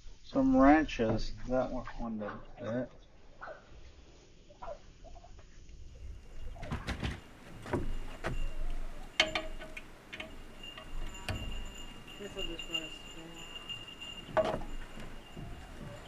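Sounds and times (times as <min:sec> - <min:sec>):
metal wrenches clinking: 0:06.4 - 0:16.0.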